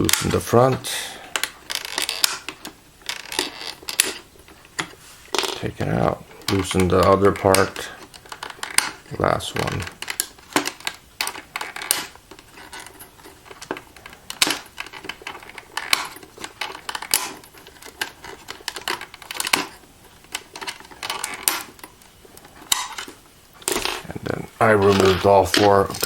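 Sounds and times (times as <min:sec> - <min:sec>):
small plastic clicks and knocks: 0:06.4 - 0:24.1.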